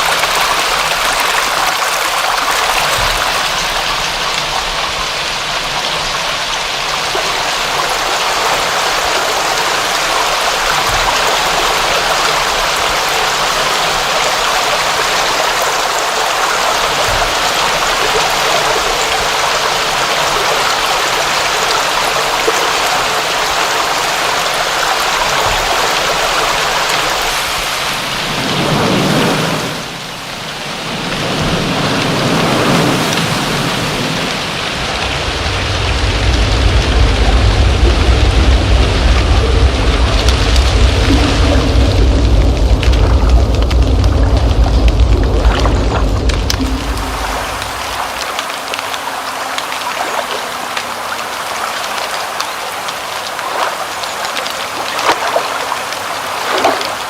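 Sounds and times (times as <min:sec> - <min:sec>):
steady rain falling: 0:00.0 - 0:57.0
deeper rumble: 0:34.8 - 0:50.6.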